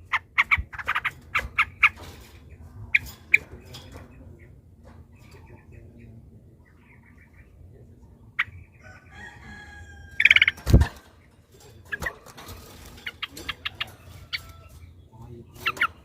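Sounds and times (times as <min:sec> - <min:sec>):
bird bubbling chatter and chirps: 0:00.0 - 0:04.6, 0:10.2 - 0:16.0
rooster crowing: 0:08.8 - 0:10.5.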